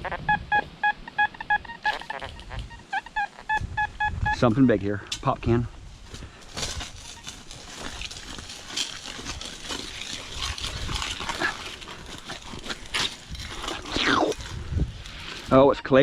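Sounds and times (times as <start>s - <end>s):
tool scraping and crunching clay: 6.4s - 15.6s
wet sucking mud: 8.2s - 15.5s.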